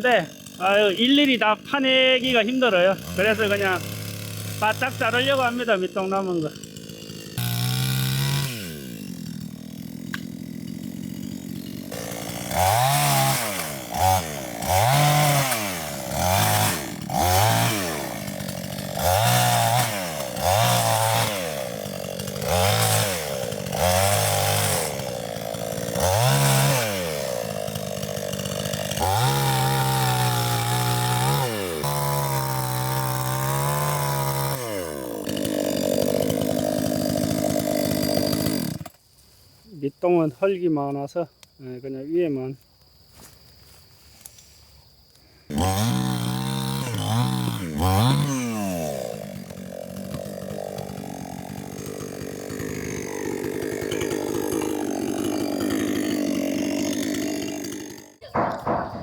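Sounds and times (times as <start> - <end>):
chainsaw idling and revving: 0.0 - 39.0, 45.5 - 59.0.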